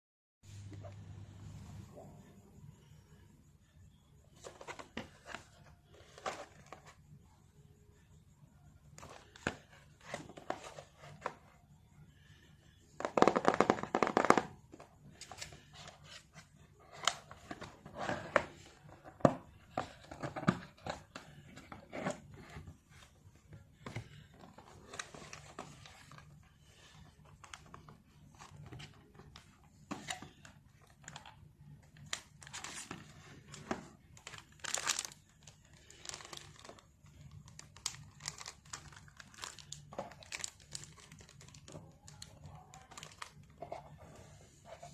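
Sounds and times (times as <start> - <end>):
packaging rustling and crinkling: 32.0 - 44.9
cardboard and plastic tearing: 34.3 - 35.2.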